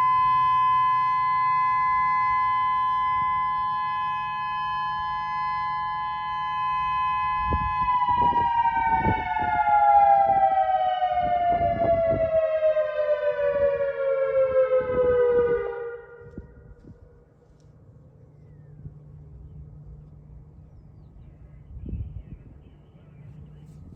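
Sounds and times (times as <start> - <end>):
warning siren winding down: 0.0 - 17.2.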